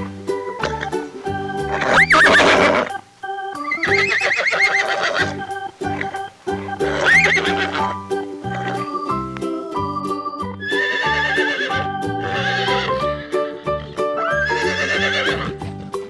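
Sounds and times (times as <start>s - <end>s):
light background music: 0.0s - 16.0s
horse whinnying: 0.6s - 0.9s, 1.7s - 3.0s, 3.6s - 9.0s, 10.6s - 13.2s, 14.4s - 15.6s.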